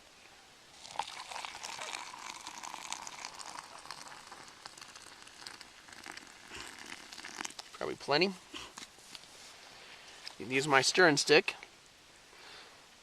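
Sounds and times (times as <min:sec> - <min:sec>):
hot water pouring: 0:00.7 - 0:07.8.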